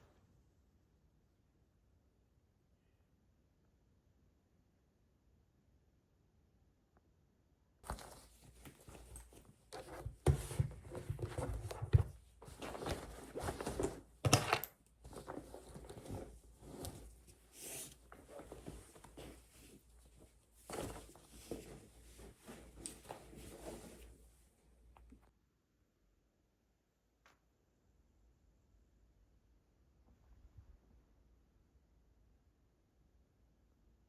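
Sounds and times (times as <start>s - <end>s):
objects rustling and scraping: 7.8s - 24.4s.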